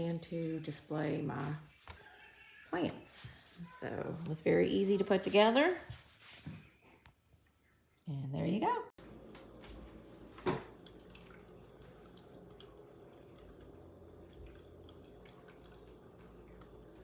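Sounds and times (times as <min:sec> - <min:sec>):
faint steady hum: 0:09.0 - 0:17.0.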